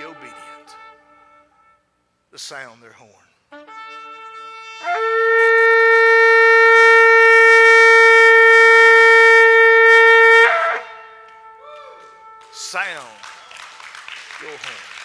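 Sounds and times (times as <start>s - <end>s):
horn blast: 0.0s - 2.0s, 3.5s - 13.2s.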